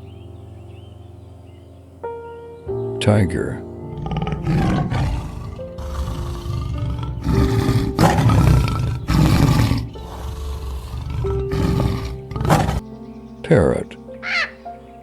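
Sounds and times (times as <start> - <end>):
background music with held notes: 0.0 - 15.0
tiger roaring: 3.9 - 12.8.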